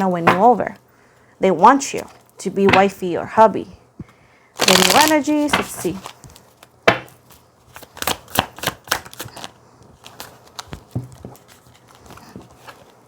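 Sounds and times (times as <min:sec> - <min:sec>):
cards being shuffled: 0:04.6 - 0:13.0.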